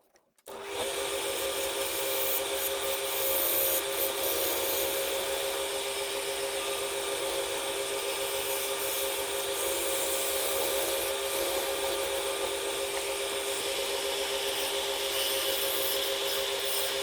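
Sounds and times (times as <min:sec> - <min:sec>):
wood lathe humming: 0:00.5 - 0:17.0.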